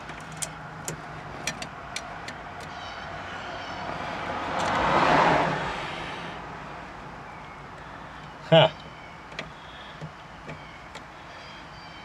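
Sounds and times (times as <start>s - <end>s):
light clicks and taps of parts: 0.0s - 2.7s
passing vehicle: 0.0s - 11.6s.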